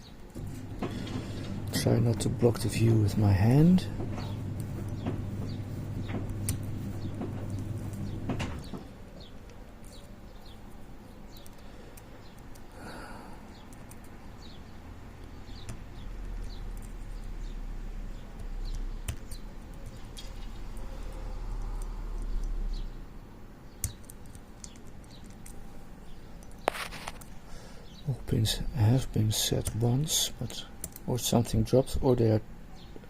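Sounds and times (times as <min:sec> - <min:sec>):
low steady hum: 0:00.0 - 0:33.0
lock pick clicks and scratches: 0:23.8 - 0:25.6.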